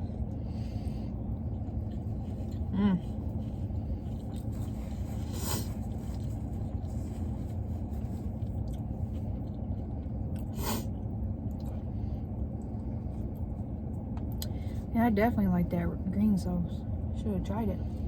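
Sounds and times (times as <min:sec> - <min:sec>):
crisp crunching while eating: 0:01.4 - 0:10.8.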